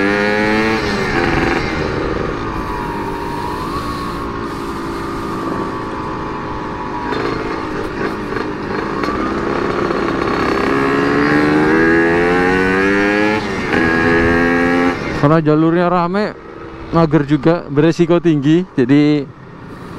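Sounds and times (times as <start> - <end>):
low wind rumble: 0.0 - 9.0
two-stroke motorcycle engine revving: 0.0 - 15.2.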